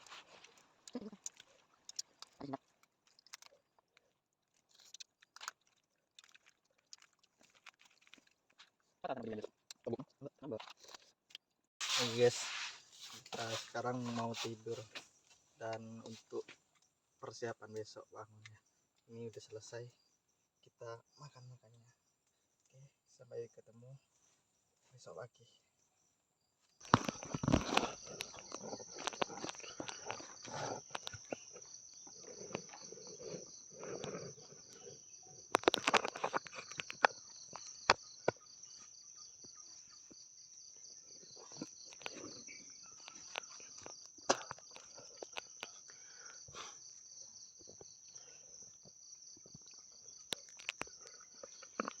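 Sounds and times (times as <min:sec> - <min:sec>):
night insects chirring: 0:11.8 - 0:52.0.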